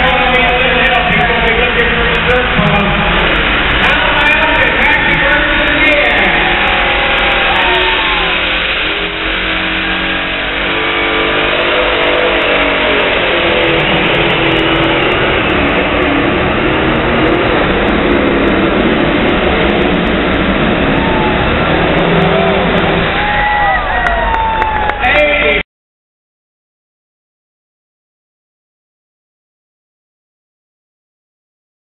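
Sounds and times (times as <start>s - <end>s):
tractor engine revving high: 0.0s - 25.6s.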